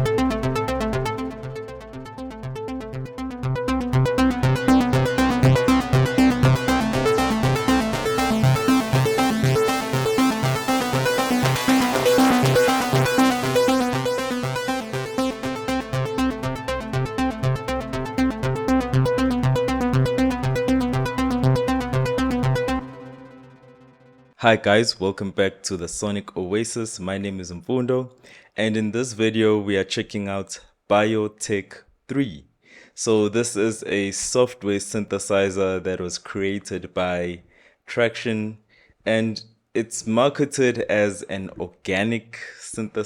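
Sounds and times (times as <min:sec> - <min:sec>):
electronic synthesizer music: 0:00.0 - 0:24.4.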